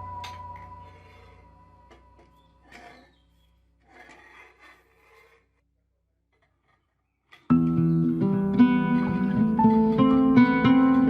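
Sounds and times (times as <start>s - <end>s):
faint background music: 0.0s - 3.0s.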